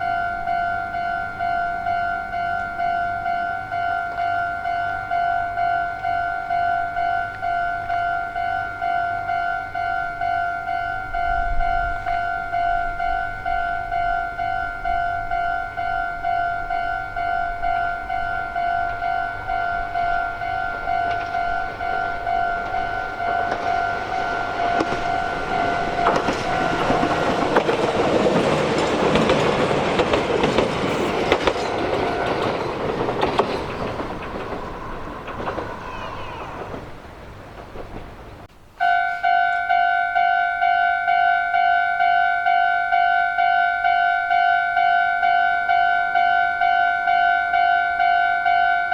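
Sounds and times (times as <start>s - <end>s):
level crossing warning bell: 0.0s - 38.1s, 38.8s - 48.9s
electric train passing: 0.0s - 48.9s
train wheel clatter: 10.7s - 38.5s.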